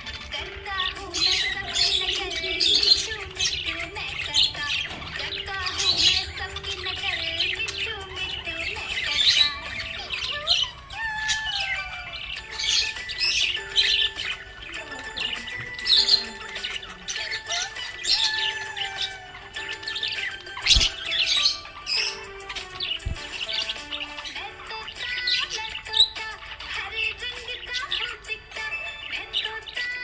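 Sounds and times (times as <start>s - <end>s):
parrots chirping and squawking: 0.0s - 30.0s.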